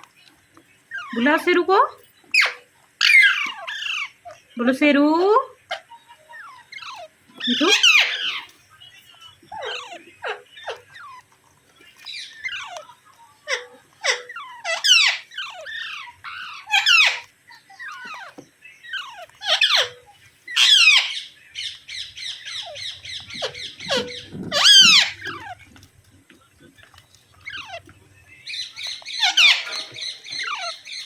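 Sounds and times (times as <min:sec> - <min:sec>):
parrot calling: 0:00.0 - 0:04.6, 0:05.2 - 0:31.0
parrot chattering: 0:00.9 - 0:04.5, 0:05.4 - 0:31.0.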